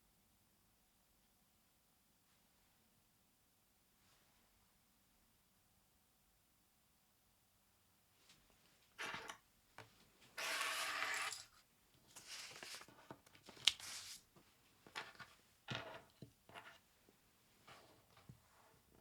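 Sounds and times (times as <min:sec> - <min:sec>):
sliding scrape: 0:10.4 - 0:11.6.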